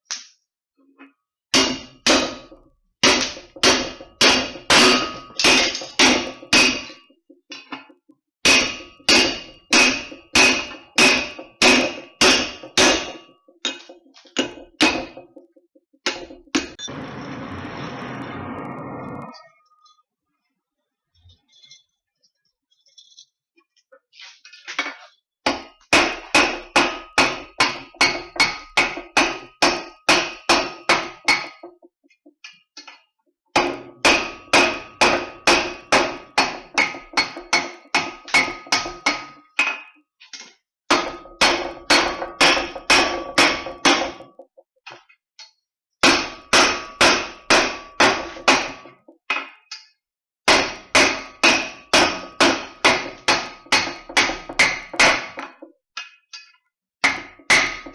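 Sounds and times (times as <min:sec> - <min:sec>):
hammer striking steel on anvil: 0:01.6 - 0:07.1, 0:08.5 - 0:15.4, 0:25.5 - 0:31.6, 0:33.6 - 0:39.9, 0:40.9 - 0:44.3, 0:46.0 - 0:49.4, 0:50.5 - 0:55.6, 0:57.0 - 0:57.9.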